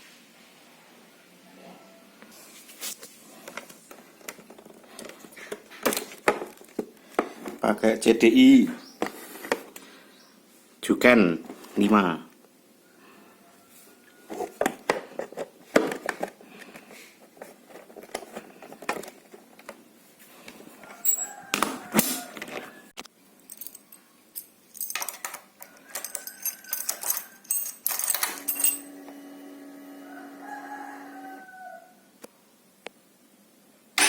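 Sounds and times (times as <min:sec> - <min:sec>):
rooster crowing: 0:01.4 - 0:02.4, 0:12.8 - 0:14.6, 0:20.8 - 0:22.9, 0:25.6 - 0:27.5, 0:29.6 - 0:32.1.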